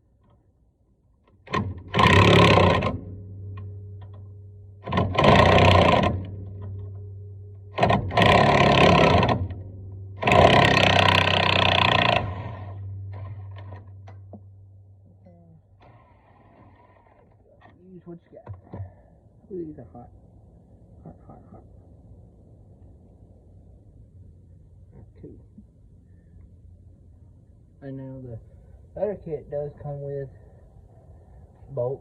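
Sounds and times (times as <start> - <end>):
steady low hum: 0.0 - 32.0
impact wrench rattling: 1.4 - 7.0, 10.2 - 14.4.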